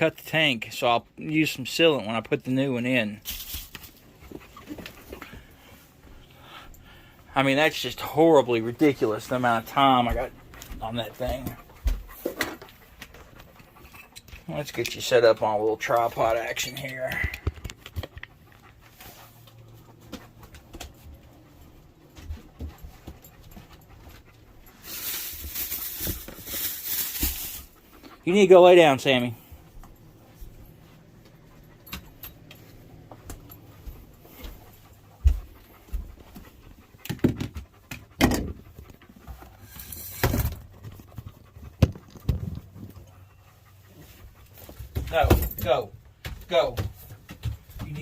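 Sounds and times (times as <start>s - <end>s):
dog panting: 0.1s - 48.0s
knocks and clatters of handling: 8.8s - 28.2s, 29.8s - 43.2s.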